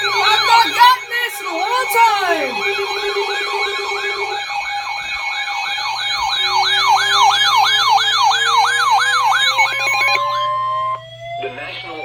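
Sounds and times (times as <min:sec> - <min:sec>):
steady alert tones: 0:00.0 - 0:11.4
electronic siren tone sweeping: 0:00.0 - 0:12.0
rising tone: 0:00.0 - 0:12.0.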